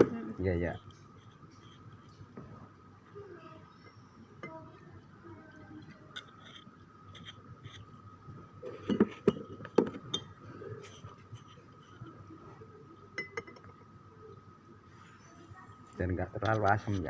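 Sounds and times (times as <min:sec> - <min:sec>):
faint steady high tone: 0:03.1 - 0:06.6, 0:11.8 - 0:15.9
glassware clinking and knocking: 0:08.8 - 0:10.4, 0:13.2 - 0:13.8.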